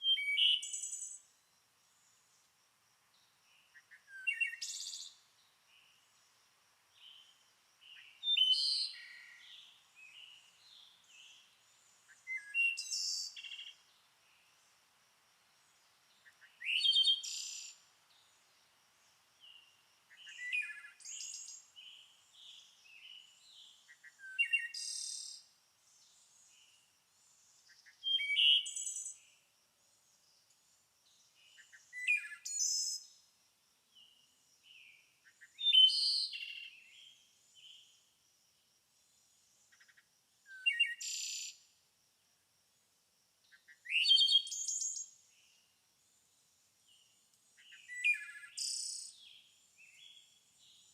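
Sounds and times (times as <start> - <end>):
songbird singing: 0.0 - 41.8, 43.4 - 50.9.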